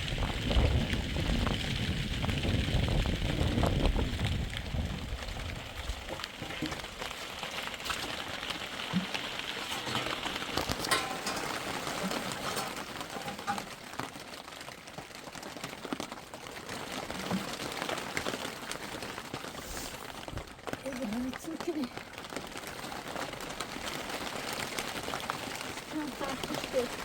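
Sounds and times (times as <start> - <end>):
wind rumble on microphone: 0.0 - 6.9
rain hissing: 0.0 - 27.0
raindrop ticks: 0.0 - 27.0.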